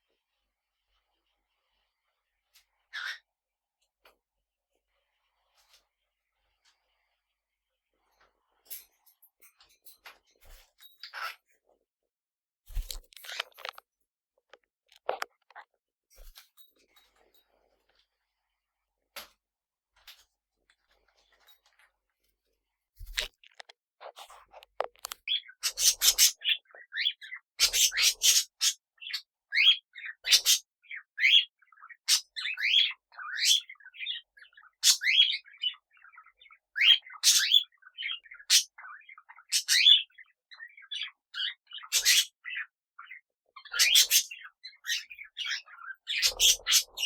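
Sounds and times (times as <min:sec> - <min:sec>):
parrots chirping and chattering: 0:02.6 - 0:03.3, 0:08.6 - 0:11.6, 0:12.8 - 0:13.8, 0:23.0 - 0:47.0.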